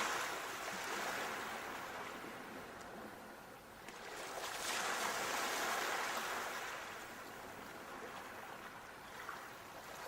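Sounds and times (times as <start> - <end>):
sea waves washing on shore: 0.0 - 10.0
faint water ticks: 1.6 - 4.0.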